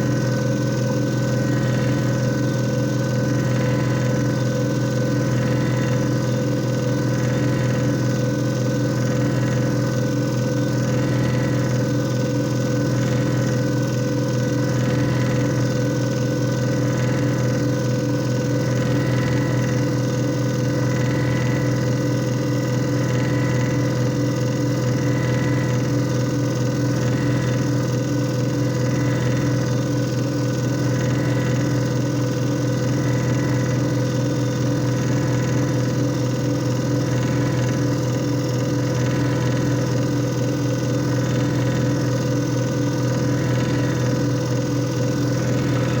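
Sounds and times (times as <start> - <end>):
electric motor humming: 0.0 - 46.0.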